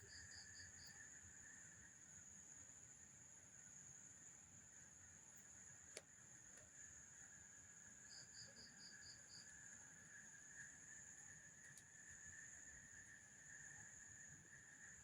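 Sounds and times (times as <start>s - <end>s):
night insects trilling: 0.0s - 15.0s.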